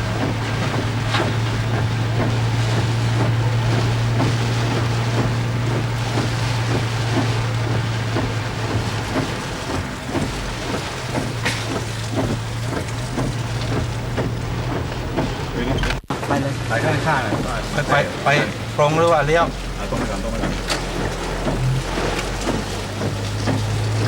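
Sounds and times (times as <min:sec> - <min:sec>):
low engine drone: 0:00.0 - 0:24.0
light ticks and knocks: 0:18.3 - 0:24.0.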